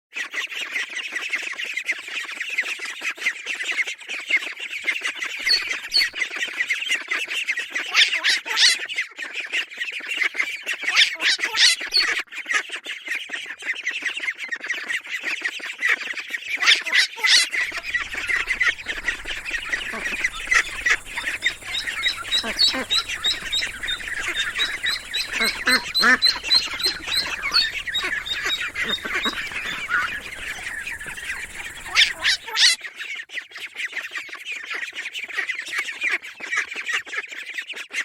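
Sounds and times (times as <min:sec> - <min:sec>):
ducklings peeping: 0:05.5 - 0:06.2, 0:17.1 - 0:32.8.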